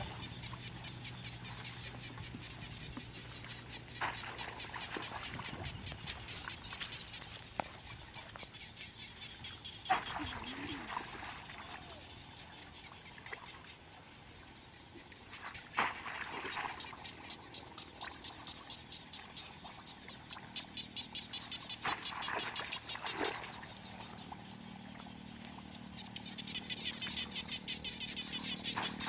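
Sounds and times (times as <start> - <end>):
short sharp knocks or splashes: 4.0 - 5.5, 15.6 - 16.8.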